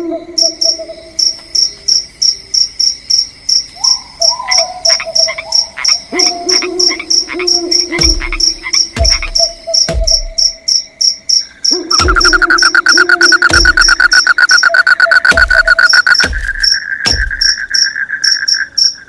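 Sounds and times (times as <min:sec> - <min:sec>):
crickets chirping: 0:00.0 - 0:19.0
dense chirping chorus: 0:00.0 - 0:19.0
low thumps: 0:08.0 - 0:10.6, 0:11.9 - 0:14.5, 0:15.1 - 0:17.8.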